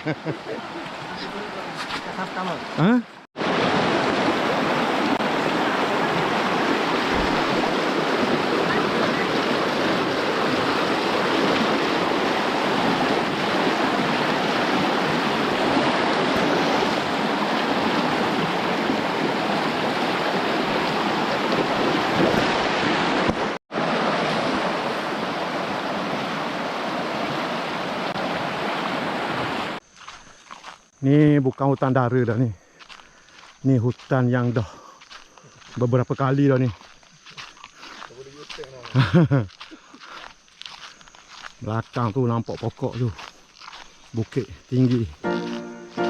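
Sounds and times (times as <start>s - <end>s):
river water rushing: 0.0s - 29.8s, 45.0s - 46.0s.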